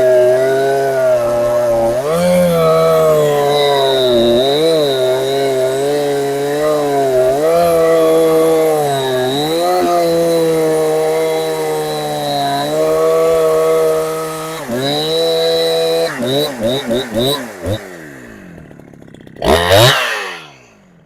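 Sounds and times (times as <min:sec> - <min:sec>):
chainsaw running fast: 0:00.0 - 0:21.0.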